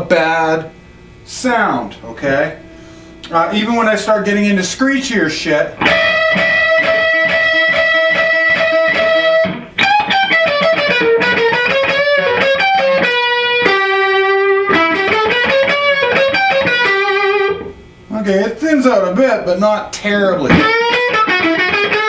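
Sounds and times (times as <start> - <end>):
distorted electric guitar lead: 5.8 - 18.0, 20.4 - 22.0.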